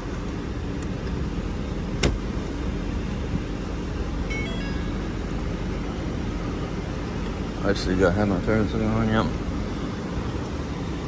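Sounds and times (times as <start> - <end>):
car engine idling: 0.0 - 11.0
faint high tones: 4.3 - 5.8.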